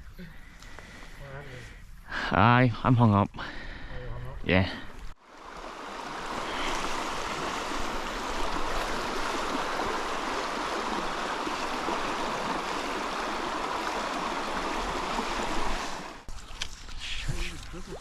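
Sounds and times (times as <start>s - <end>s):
stream water rushing over riffles: 5.2s - 16.3s.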